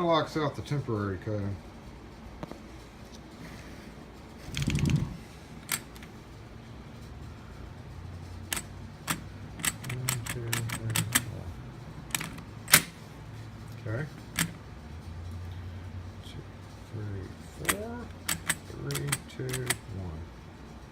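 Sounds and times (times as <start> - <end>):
short rattling clatter: 4.4 - 6.1.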